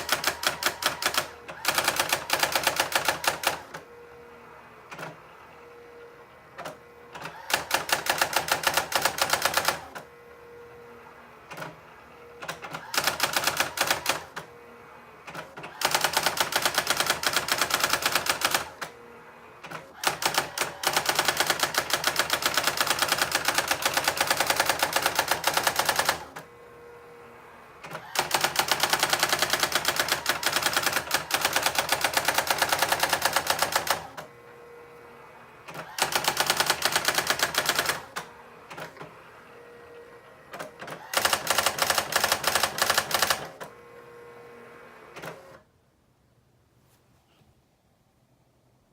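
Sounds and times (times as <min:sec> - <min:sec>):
electronic typewriter printing: 0:00.0 - 0:03.9, 0:04.8 - 0:05.3, 0:06.5 - 0:10.1, 0:11.4 - 0:11.8, 0:12.4 - 0:14.6, 0:15.2 - 0:19.0, 0:19.6 - 0:26.5, 0:27.8 - 0:34.4, 0:35.6 - 0:39.2, 0:39.9 - 0:43.8
faint machine hum: 0:00.0 - 0:48.9.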